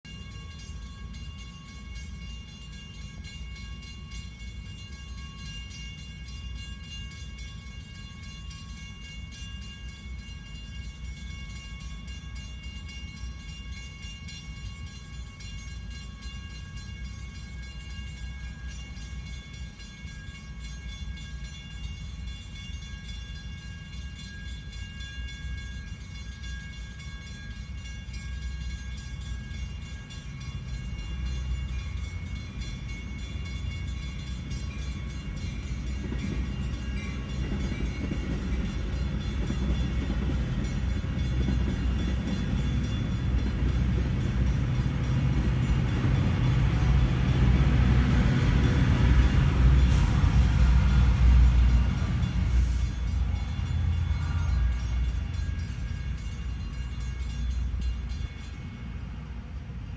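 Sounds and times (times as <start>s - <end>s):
train passing with low rumble: 0.0s - 59.9s.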